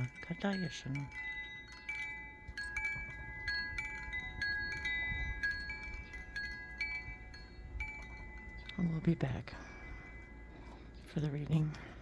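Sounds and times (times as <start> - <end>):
wind chimes ringing: 0.0 - 12.0.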